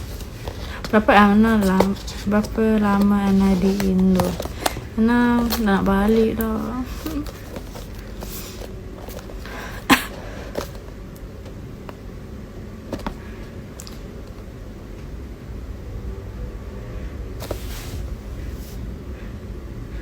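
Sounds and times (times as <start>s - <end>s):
packaging rustling: 0.0s - 11.0s
low steady hum: 0.0s - 20.0s.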